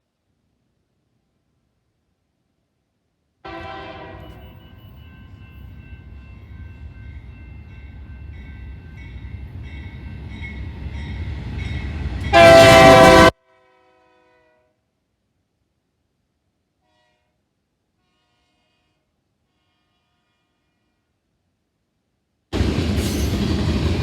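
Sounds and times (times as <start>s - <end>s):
locomotive air horn: 3.5s - 4.5s, 12.3s - 14.7s.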